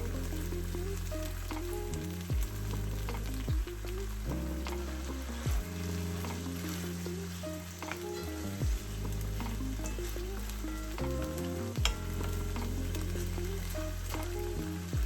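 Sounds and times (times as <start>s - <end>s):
background music with bass: 0.0s - 15.0s
food sizzling in frying pan: 0.0s - 15.0s.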